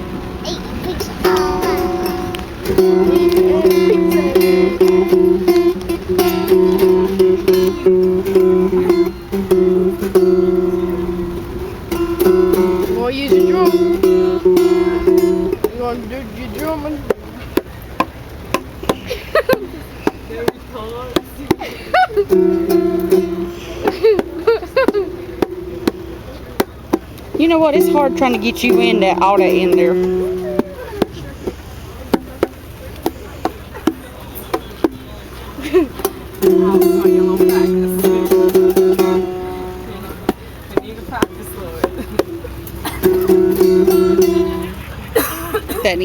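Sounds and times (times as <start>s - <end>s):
plucked string backing music: 0.0s - 46.0s
child drumming taps: 0.4s - 15.9s, 16.6s - 35.1s, 35.8s - 44.6s
voice holding long note: 27.4s - 30.9s.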